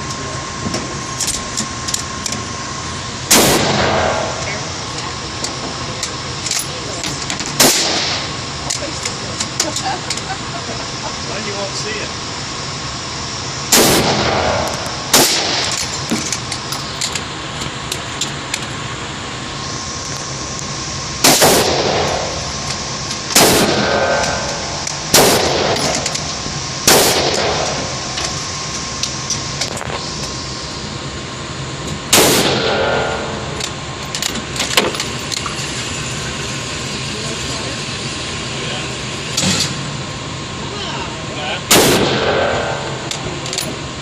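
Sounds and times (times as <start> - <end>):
rifle shots with echo: 3.3 - 4.5, 7.6 - 8.3, 13.7 - 15.8, 21.2 - 22.4, 23.3 - 26.0, 26.8 - 27.9, 32.1 - 33.6, 41.7 - 43.1.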